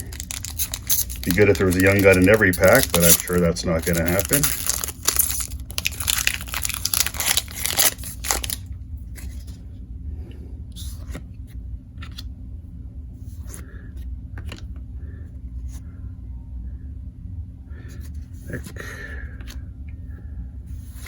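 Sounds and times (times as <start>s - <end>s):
wrapper tearing and crinkling: 0.0s - 8.7s
cards rustling and clicking: 0.0s - 9.5s
steady low hum: 0.0s - 21.0s.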